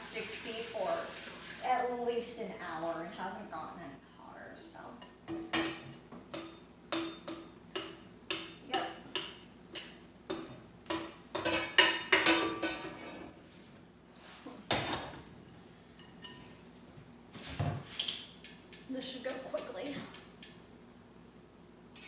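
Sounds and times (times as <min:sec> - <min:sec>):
metal kitchenware clinking on pot: 0:05.3 - 0:13.2, 0:16.0 - 0:16.6.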